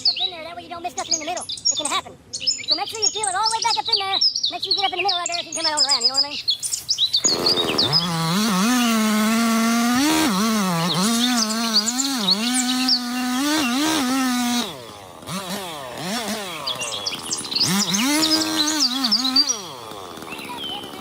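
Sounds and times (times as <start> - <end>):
birds chirping: 0.0 - 21.0
chainsaw running: 7.2 - 21.0.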